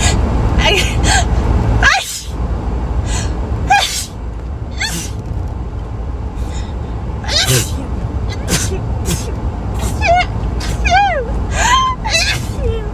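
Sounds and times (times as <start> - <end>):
person sneezing: 3.8 - 4.1, 4.8 - 5.2, 7.3 - 10.9, 12.2 - 12.6
gasping breaths: 6.4 - 7.8.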